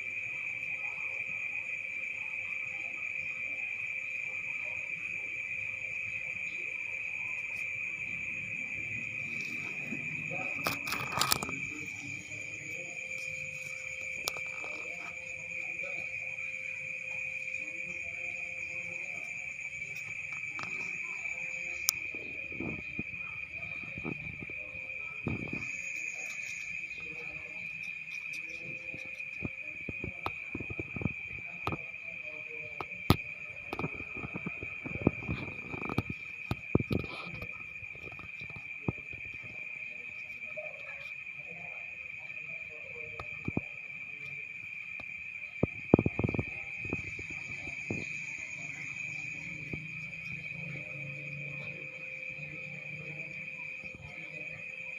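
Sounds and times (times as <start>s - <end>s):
crickets chirring: 0.0s - 54.9s
scattered clicks and knocks: 9.6s - 12.3s, 32.8s - 39.5s.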